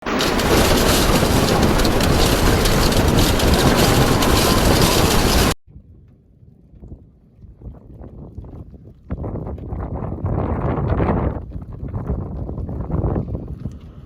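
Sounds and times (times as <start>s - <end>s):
rushing storm noise: 0.0s - 5.6s.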